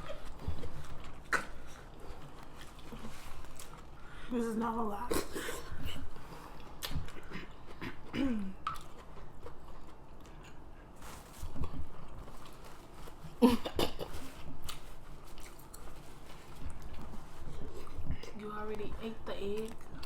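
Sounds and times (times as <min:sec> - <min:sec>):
chewing and mouth smacks: 0:00.0 - 0:04.0, 0:06.5 - 0:12.7, 0:14.4 - 0:18.2.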